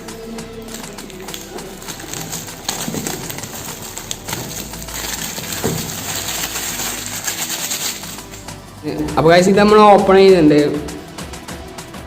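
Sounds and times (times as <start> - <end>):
plastic wrap crinkling and tearing: 0.5 - 8.5.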